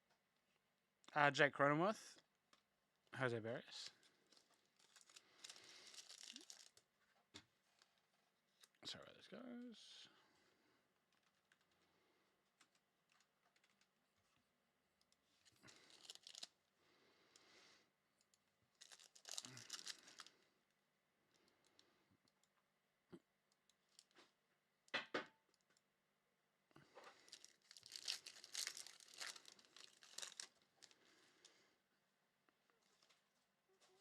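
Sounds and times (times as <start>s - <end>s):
foil wrapper tearing and crinkling: 3.8s - 6.8s, 15.5s - 16.5s, 18.8s - 20.3s, 27.2s - 31.0s.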